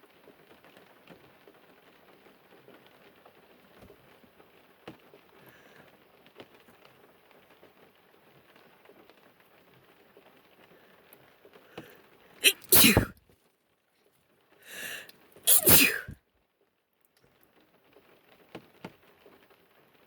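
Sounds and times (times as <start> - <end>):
small clicks and rustles: 0.0 - 12.4, 16.4 - 20.0.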